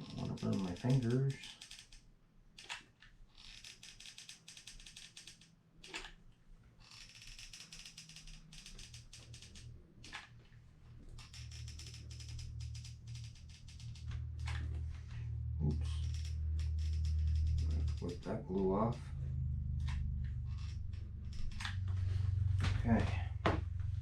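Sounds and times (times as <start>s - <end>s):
glue gun rapid clicking: 0.0s - 2.0s, 3.4s - 6.2s, 6.9s - 10.3s, 11.2s - 14.7s
low steady hum: 8.7s - 24.0s.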